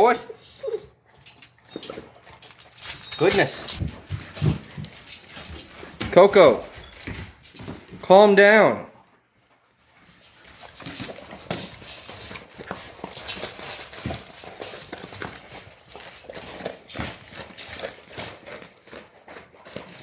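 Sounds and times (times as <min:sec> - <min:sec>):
dog crunching and chewing food: 0:01.0 - 0:09.1, 0:09.7 - 0:20.0.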